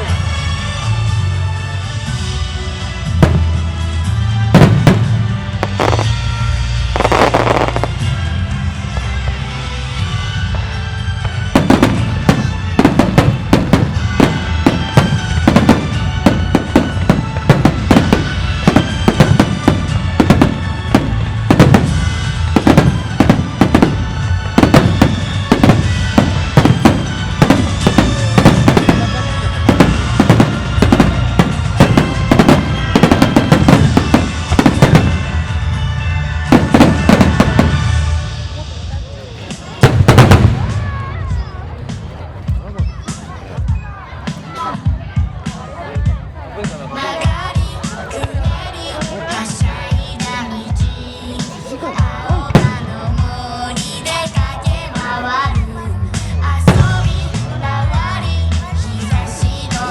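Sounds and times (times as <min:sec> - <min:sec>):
music playing: 0:00.0 - 0:59.9
firework shells bursting: 0:04.6 - 0:06.2.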